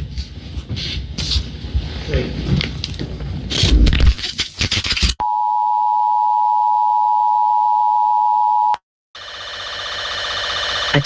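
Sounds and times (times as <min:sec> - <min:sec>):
buzzing pulsing alarm tone: 0:09.2 - 0:11.0.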